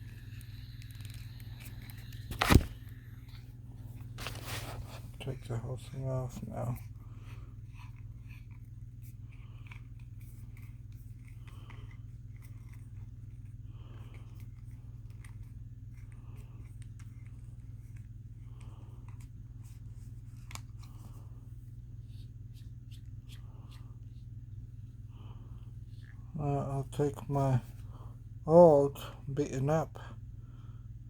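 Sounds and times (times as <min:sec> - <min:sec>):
small clicks and scrapes: 0:00.0 - 0:03.4, 0:06.7 - 0:21.2
steady low hum: 0:00.0 - 0:31.0.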